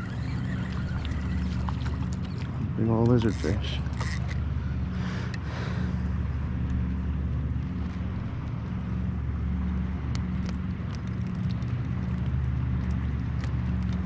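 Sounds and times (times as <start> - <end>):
motor humming: 0.0 - 7.0
small ticks: 10.1 - 14.0.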